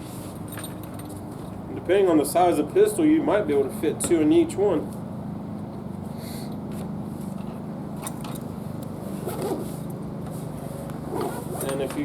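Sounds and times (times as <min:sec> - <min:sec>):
light handling sounds: 0:09.2 - 0:12.0.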